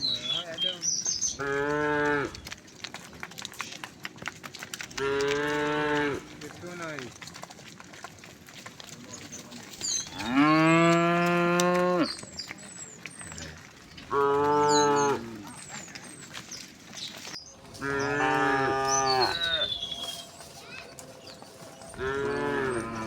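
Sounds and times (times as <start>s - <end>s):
cows mooing: 1.3s - 2.6s, 4.9s - 7.0s, 10.0s - 12.3s, 13.2s - 15.8s, 17.6s - 20.4s, 21.4s - 23.0s.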